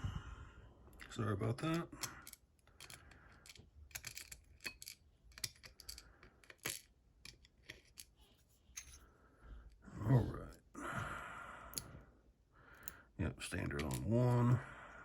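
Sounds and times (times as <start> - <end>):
small metallic clicks and taps: 1.0 - 9.0.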